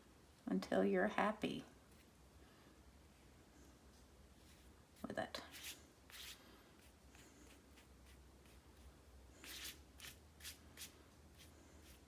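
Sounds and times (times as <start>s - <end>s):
brush swishing on wet paper: 4.0s - 12.0s.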